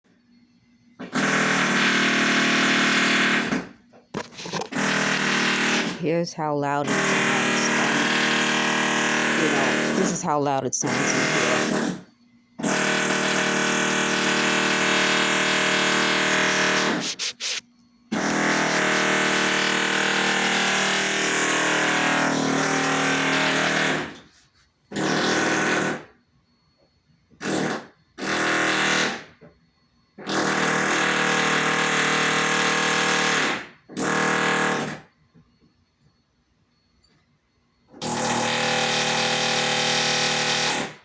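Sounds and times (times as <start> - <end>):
loud buzzing drone: 14.1 - 17.5.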